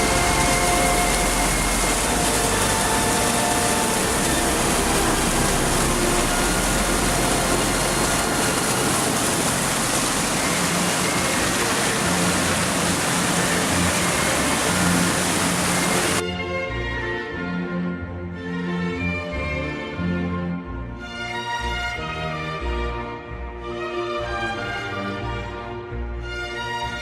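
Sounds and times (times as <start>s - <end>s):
mountain torrent rushing: 0.0s - 16.2s.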